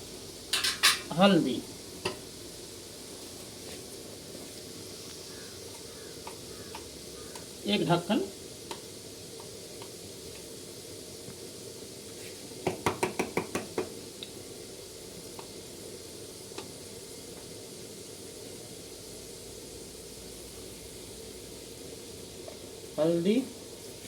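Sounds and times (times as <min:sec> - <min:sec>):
spices sizzling in a pan: 0:00.0 - 0:24.0
utensil tapping a pan: 0:00.5 - 0:01.1, 0:05.3 - 0:07.5, 0:12.6 - 0:14.0.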